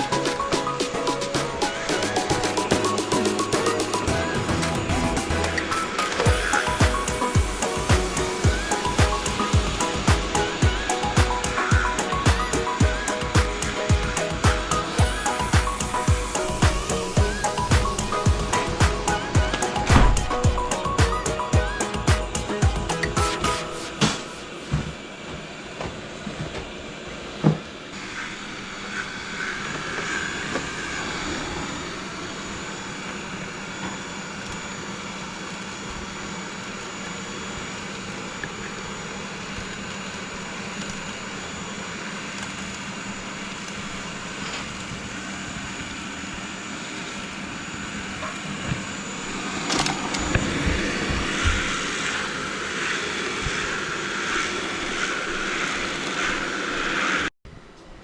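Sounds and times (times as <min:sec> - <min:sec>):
robot vacuum whirring: 0:00.0 - 0:25.1.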